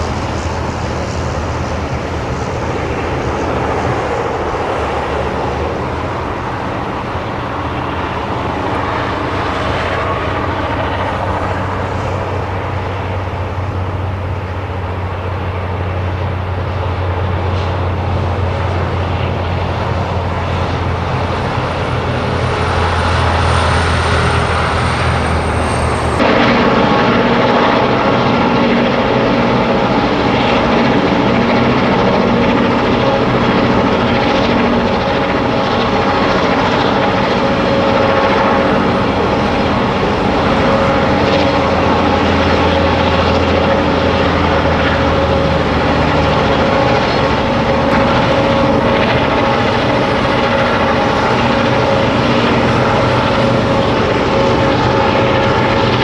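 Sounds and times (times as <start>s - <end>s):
diesel locomotive engine drone: 0.0s - 56.0s.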